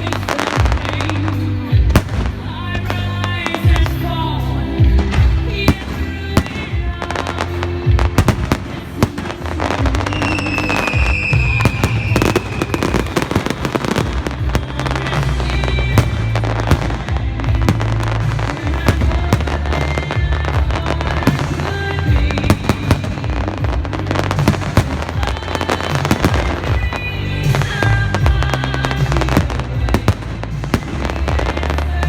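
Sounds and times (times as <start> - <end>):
fireworks bursting and crackling: 0.0 - 32.0
loud music with bass: 0.0 - 32.0
falling whistling tone: 10.1 - 13.0.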